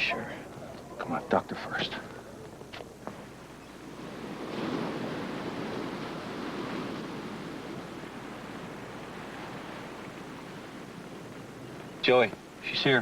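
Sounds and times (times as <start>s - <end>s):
ocean waves washing in: 3.0s - 13.0s.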